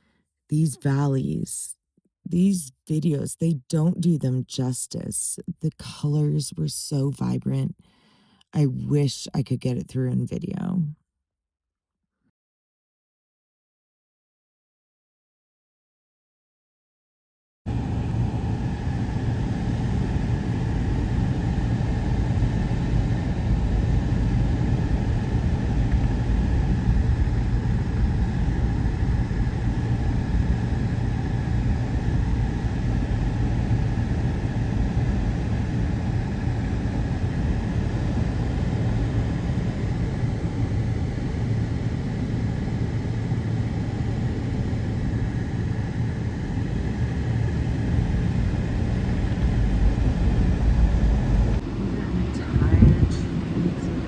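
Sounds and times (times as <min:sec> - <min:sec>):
vehicle engine and road rumble: 0:17.7 - 0:54.0.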